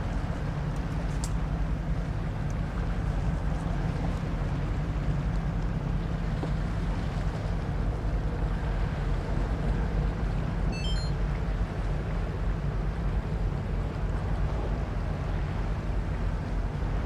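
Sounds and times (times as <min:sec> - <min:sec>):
boat diesel engine throbbing: 0:00.0 - 0:17.0
high chirps: 0:10.8 - 0:11.1.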